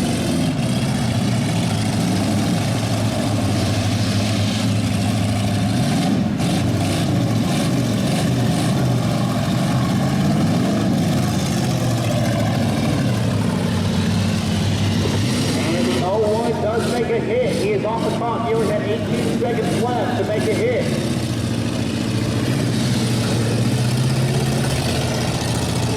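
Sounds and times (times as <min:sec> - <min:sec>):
car engines revving: 0:00.0 - 0:25.9.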